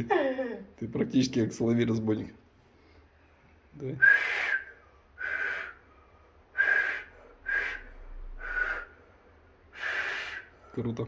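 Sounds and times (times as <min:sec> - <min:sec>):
breathy whistle blasts: 0:04.0 - 0:05.9, 0:06.5 - 0:10.6.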